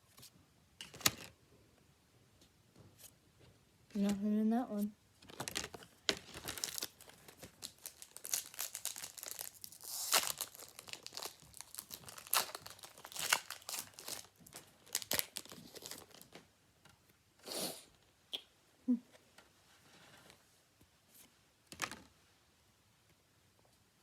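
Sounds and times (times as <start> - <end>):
foil wrapper crinkling and tearing: 5.2 - 16.4.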